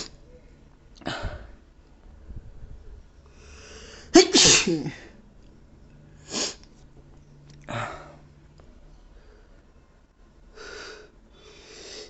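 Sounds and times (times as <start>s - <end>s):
sharp intake of breath: 3.3s - 4.2s
person sneezing: 4.1s - 5.1s.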